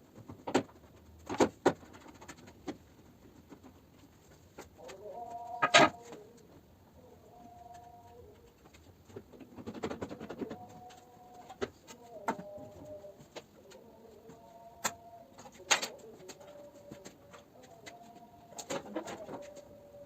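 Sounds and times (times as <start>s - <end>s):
soft cooing notes: 4.8s - 8.6s, 10.0s - 20.0s.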